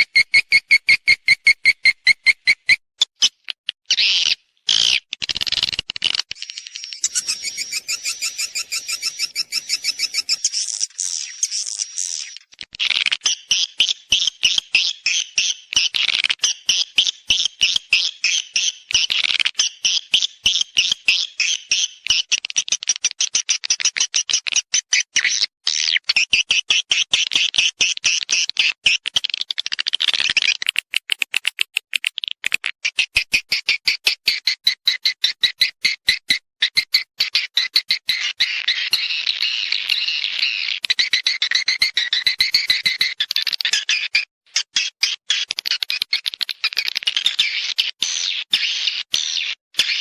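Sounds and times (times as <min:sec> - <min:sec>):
swiftlet chattering chirps: 0:07.0 - 0:10.8.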